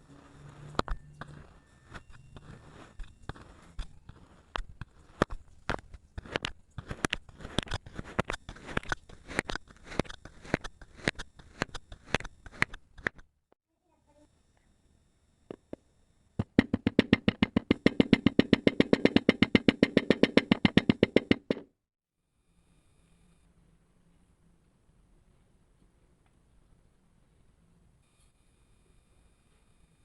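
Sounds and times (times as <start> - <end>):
kinetic sand crunching: 0.3 - 13.1.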